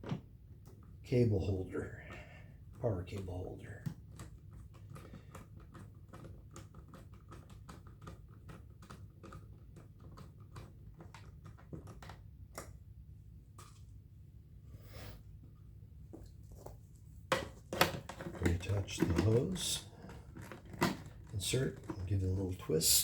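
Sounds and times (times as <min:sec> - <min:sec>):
plastic parts clicking and tapping: 0:03.8 - 0:12.8, 0:17.3 - 0:22.3.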